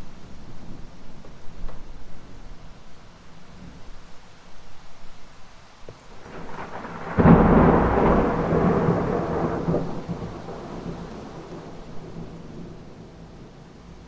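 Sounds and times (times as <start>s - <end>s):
rain hissing: 0.0s - 14.0s
thunder rumble and crack: 6.1s - 14.0s.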